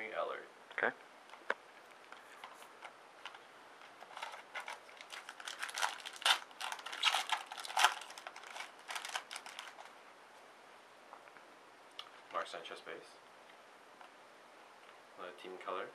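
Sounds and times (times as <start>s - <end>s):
cards crinkling and rustling: 1.3s - 10.0s.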